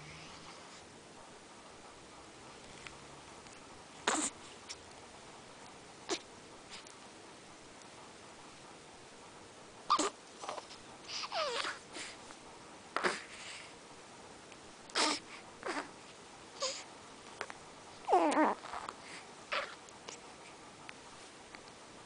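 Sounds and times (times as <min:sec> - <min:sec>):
baby snoring: 0:00.0 - 0:00.8, 0:04.0 - 0:04.4, 0:11.2 - 0:11.8, 0:13.0 - 0:13.4, 0:15.0 - 0:15.9, 0:18.1 - 0:18.9, 0:19.5 - 0:19.8.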